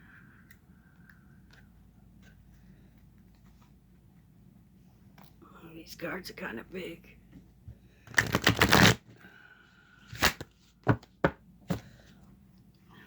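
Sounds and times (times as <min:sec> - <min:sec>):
cards shuffling: 0:08.1 - 0:09.0, 0:10.1 - 0:11.0
cards slapped together: 0:10.2 - 0:11.1.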